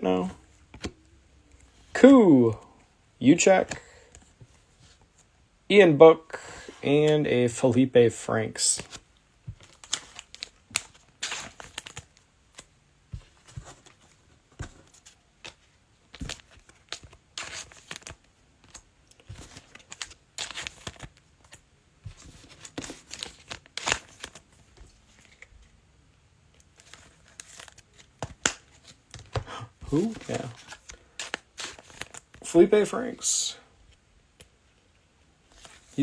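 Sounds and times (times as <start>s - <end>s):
cards shuffling: 0.2s - 2.8s, 8.6s - 25.7s, 26.5s - 33.4s, 35.5s - 36.0s
foil wrappers crinkling: 29.2s - 32.5s
foil packs tearing: 29.8s - 32.2s.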